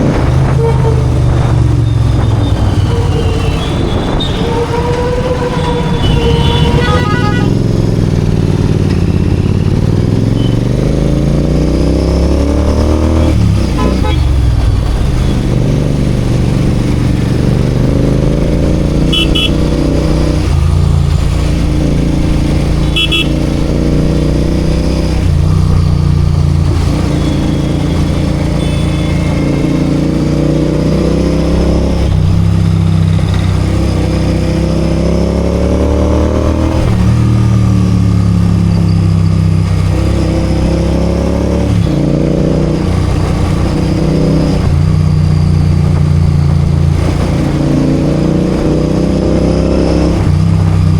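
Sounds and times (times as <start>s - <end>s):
motorcycle engine accelerating: 0.0s - 50.9s
short horn beeps: 5.6s - 7.6s, 10.3s - 10.7s, 19.1s - 19.6s, 22.8s - 23.4s, 27.2s - 29.9s.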